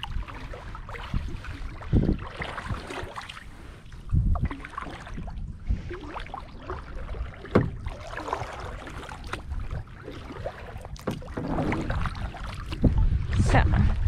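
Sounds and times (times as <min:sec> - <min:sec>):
paddle splashes: 0:00.0 - 0:14.0
low steady rumble: 0:11.5 - 0:14.0.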